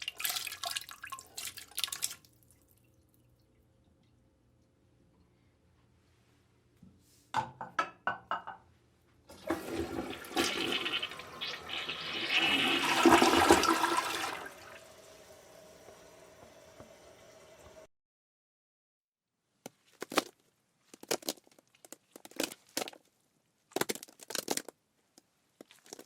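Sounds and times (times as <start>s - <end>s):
toilet cistern refilling hiss: 9.3s - 17.9s
toilet flushing: 9.3s - 17.9s.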